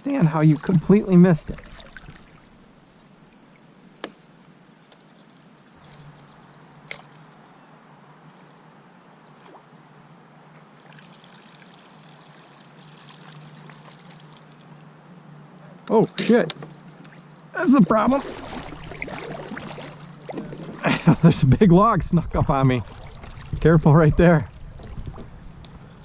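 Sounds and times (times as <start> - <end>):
steady high-pitched tone: 0.0 - 10.4, 17.6 - 22.9
river water trickling: 0.1 - 3.9, 10.5 - 15.2, 16.7 - 21.1, 22.8 - 23.6.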